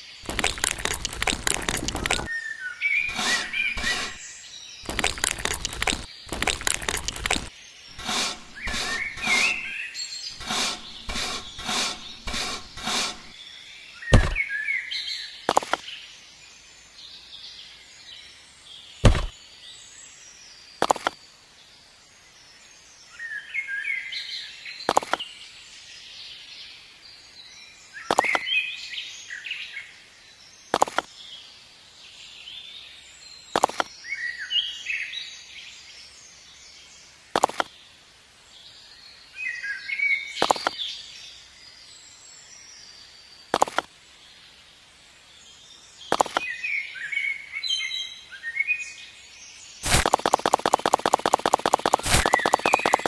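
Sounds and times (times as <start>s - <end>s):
small birds chirping: 0.0s - 2.3s, 2.9s - 14.5s, 45.4s - 53.0s.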